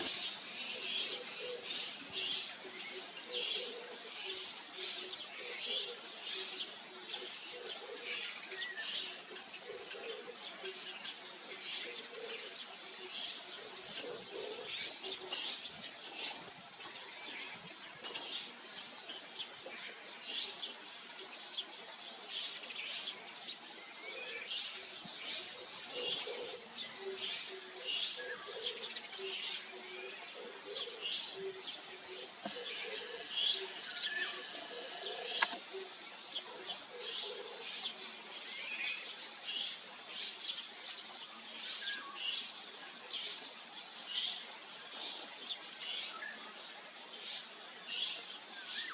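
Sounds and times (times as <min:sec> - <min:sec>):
small birds chirping: 0:04.4 - 0:48.9.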